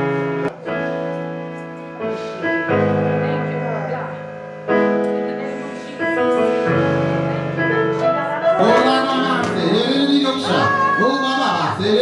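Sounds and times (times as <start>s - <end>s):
church keyboard sustained chords: 0.0s - 12.0s
person singing: 8.5s - 12.0s.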